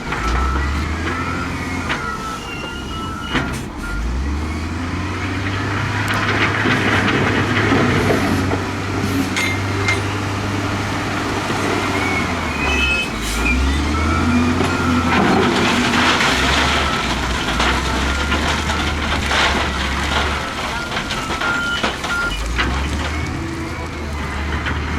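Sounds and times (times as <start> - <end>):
heavy machinery diesel engines: 0.0 - 24.9
faint reversing beeps: 0.2 - 4.6, 11.8 - 24.6.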